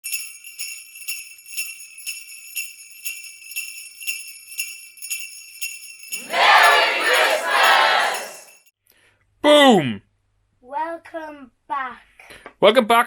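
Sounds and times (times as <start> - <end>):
sleigh bells jingling: 0.0 - 8.7.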